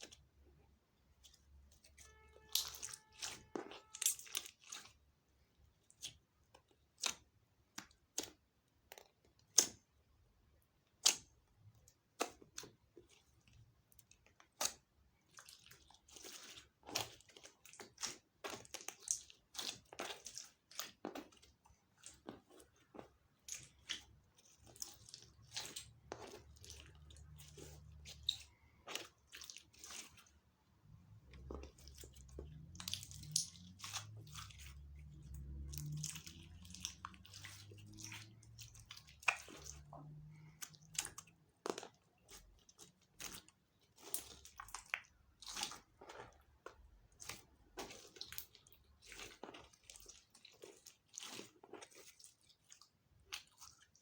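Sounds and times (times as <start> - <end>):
slime clicking and popping: 31.4 - 34.0.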